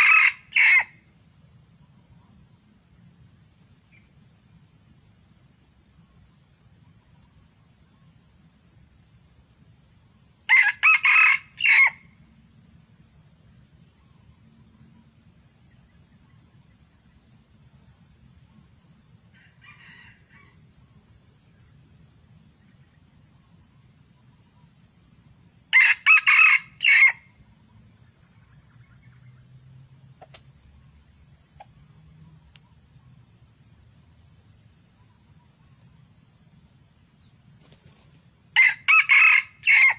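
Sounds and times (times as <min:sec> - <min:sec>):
faint animal call: 0:00.0 - 0:01.0
junglefowl crowing: 0:00.0 - 0:01.0, 0:10.5 - 0:12.0, 0:19.4 - 0:20.6, 0:25.8 - 0:27.3, 0:38.6 - 0:39.9
insect drone: 0:00.0 - 0:39.9.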